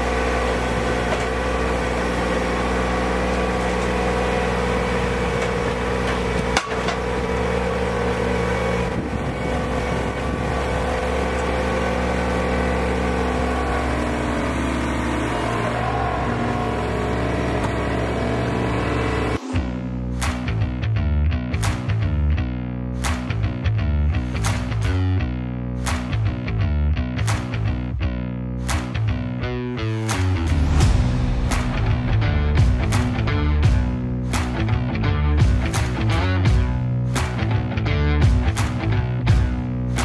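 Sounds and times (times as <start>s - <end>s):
machine engine running: 0.0s - 19.8s.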